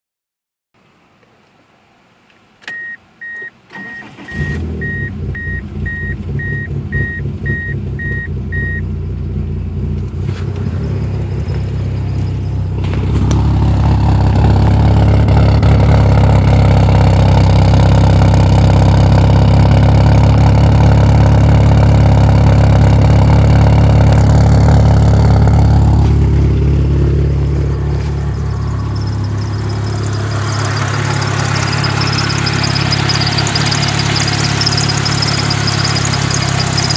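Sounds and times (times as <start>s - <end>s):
car engine cranking and idling: 2.2s - 36.9s
dashboard chime beeping: 2.7s - 8.8s.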